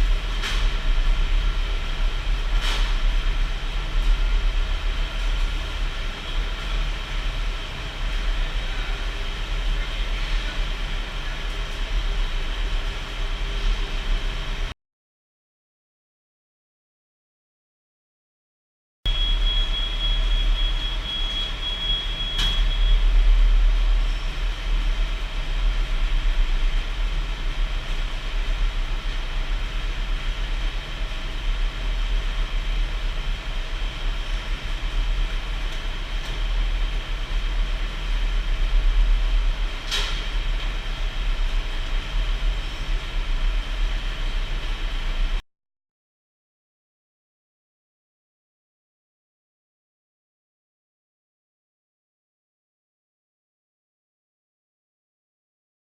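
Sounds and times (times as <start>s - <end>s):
machine rumble and whine: 0.0s - 14.8s, 19.1s - 45.4s.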